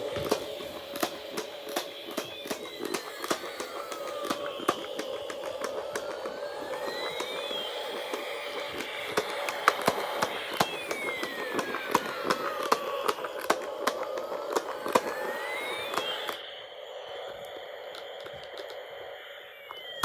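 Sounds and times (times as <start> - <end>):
toy electronic siren wailing: 0.0 - 20.0
toy motor hum: 0.0 - 20.0
sharp clicks from toy: 0.2 - 16.4.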